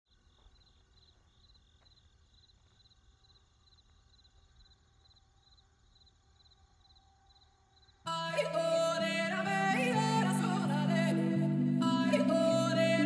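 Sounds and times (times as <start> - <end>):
insect chirping: 0.1 - 8.5.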